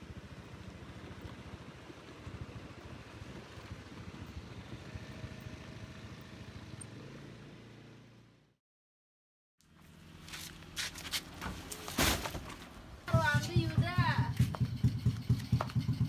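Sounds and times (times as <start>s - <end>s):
vehicle engine and road noise: 0.0s - 8.6s, 9.6s - 16.0s.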